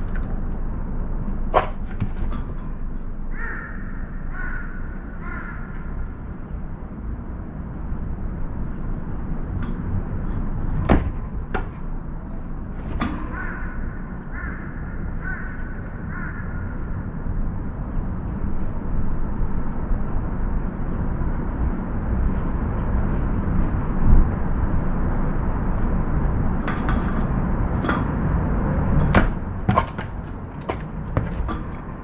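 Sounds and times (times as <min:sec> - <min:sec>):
low wind rumble: 0:00.0 - 0:32.0
sharp knocks: 0:01.5 - 0:02.7, 0:09.6 - 0:12.0, 0:26.6 - 0:32.0
crow cawing: 0:03.3 - 0:06.0, 0:13.2 - 0:17.0.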